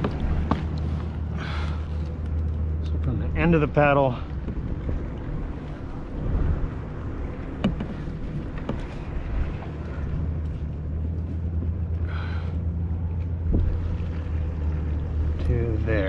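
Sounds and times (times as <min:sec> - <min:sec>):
boat engine droning: 0:00.0 - 0:16.0.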